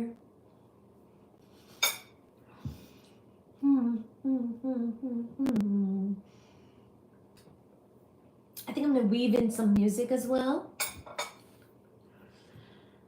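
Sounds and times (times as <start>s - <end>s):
woman humming a tune: 3.6s - 6.2s.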